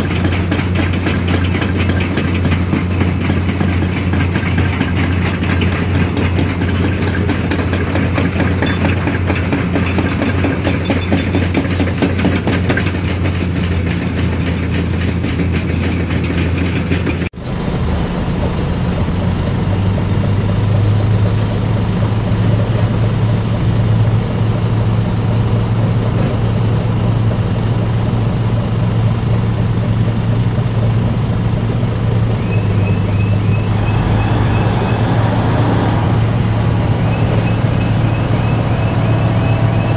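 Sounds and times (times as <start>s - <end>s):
heavy diesel engine droning: 0.0s - 13.5s, 17.4s - 39.9s
reversing alarm beeping: 32.4s - 39.9s.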